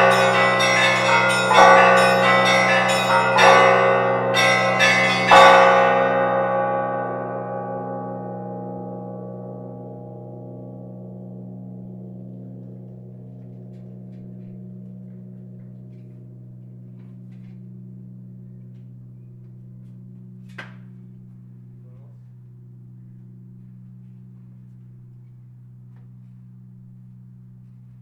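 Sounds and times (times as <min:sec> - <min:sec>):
church bell hum ringing: 0:00.0 - 0:20.4.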